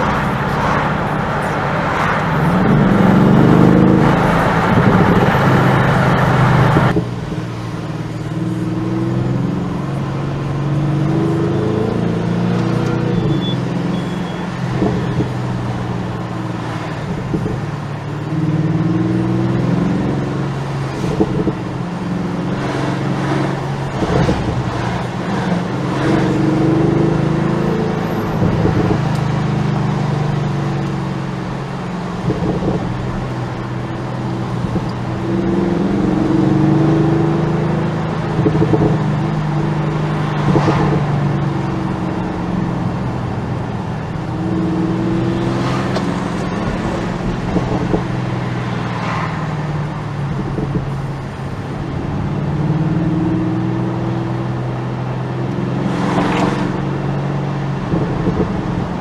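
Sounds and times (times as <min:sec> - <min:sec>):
loud rushing noise: 0:00.0 - 0:07.4, 0:38.6 - 0:52.2
car engine accelerating: 0:00.0 - 0:59.0.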